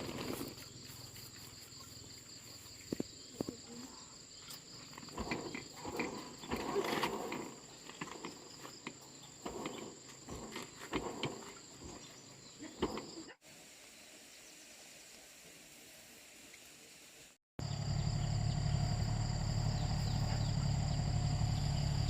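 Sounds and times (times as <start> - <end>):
handling knocks and rustling: 0.0 - 3.8, 4.4 - 13.4
insects chirping: 0.0 - 22.0
even hiss: 13.4 - 17.4.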